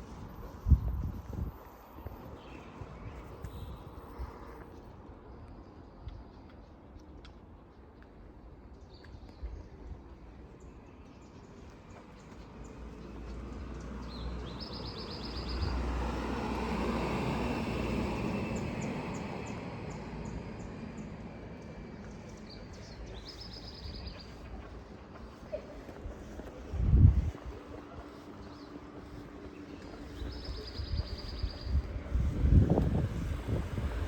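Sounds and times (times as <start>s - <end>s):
vehicle passing by: 15.3s - 20.1s, 28.6s - 34.0s.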